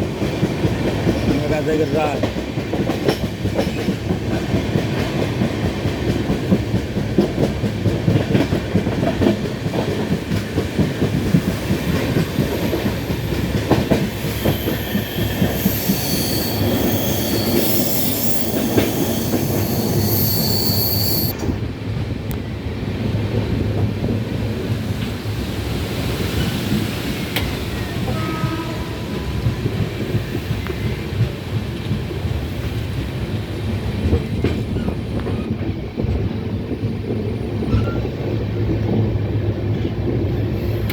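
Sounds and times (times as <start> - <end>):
train rumble: 0.0 - 40.9
high-pitched wheel squeal: 14.1 - 21.3.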